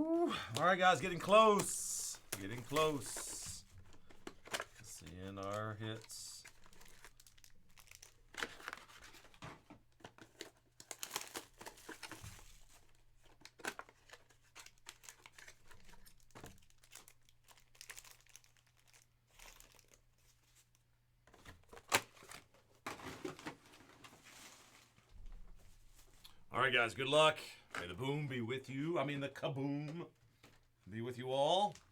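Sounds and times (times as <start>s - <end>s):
plastic wrapping crinkling and tearing: 0.5s - 9.4s, 10.0s - 20.8s.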